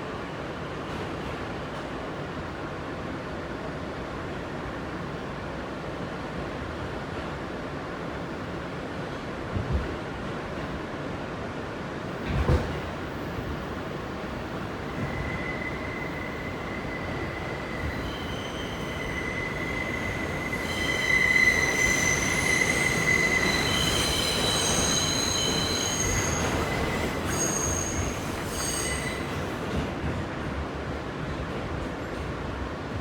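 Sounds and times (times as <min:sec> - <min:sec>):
metal wheel squeal: 0:18.1 - 0:29.2.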